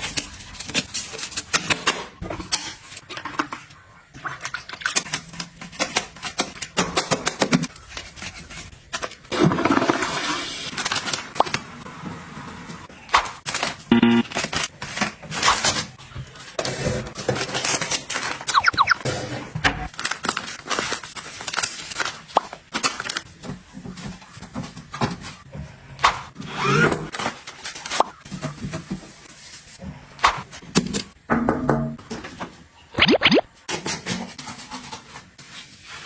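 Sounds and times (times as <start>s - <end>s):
items clicking tapping and knocking: 0.0s - 7.8s.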